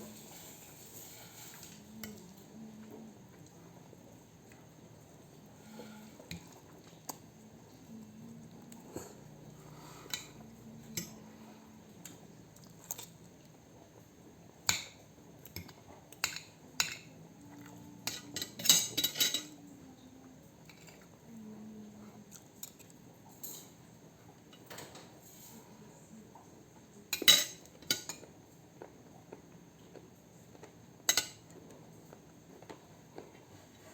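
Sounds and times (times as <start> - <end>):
cutlery clinking on a plate: 18.0 - 19.6, 27.1 - 28.3, 31.1 - 31.5.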